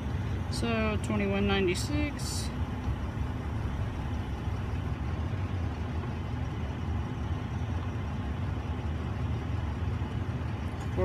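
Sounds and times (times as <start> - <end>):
pickup engine idling: 0.0 - 11.0.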